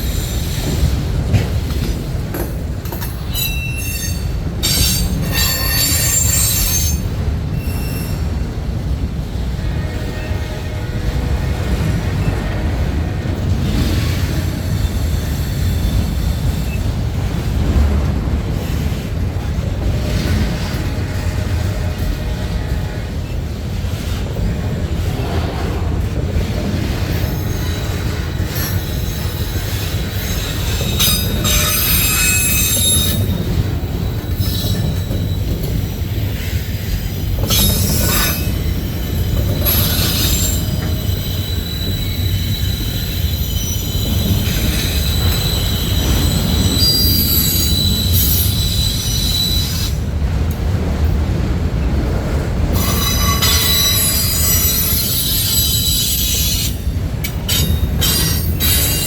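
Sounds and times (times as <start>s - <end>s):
train wheels squealing: 0.0s - 1.0s, 2.8s - 8.4s, 13.8s - 17.0s, 26.8s - 50.1s, 52.7s - 59.0s
freight train rumbling past: 0.0s - 59.0s.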